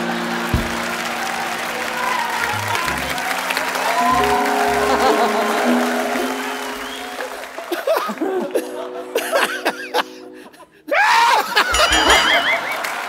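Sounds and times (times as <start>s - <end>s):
audience laughter: 0.0s - 1.4s, 4.2s - 10.4s
held musical chord: 11.7s - 13.0s.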